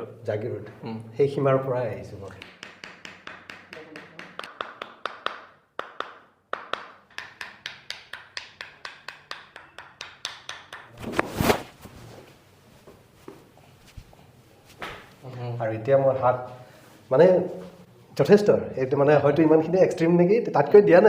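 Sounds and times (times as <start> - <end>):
rustling noise: 11.0 - 15.2.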